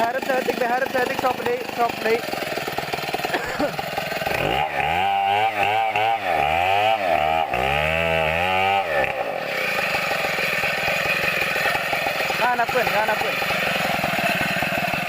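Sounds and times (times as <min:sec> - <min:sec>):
chainsaw cutting wood: 0:00.0 - 0:15.0.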